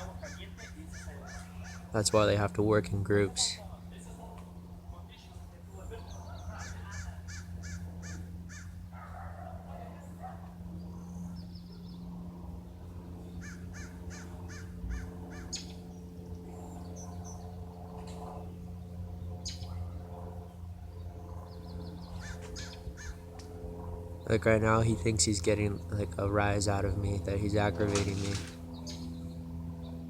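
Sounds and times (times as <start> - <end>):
bird calls: 0.0 - 2.1, 5.8 - 9.6, 13.1 - 18.1, 19.2 - 20.1, 21.0 - 23.3, 27.7 - 30.0
light plane engine droning: 0.0 - 30.0.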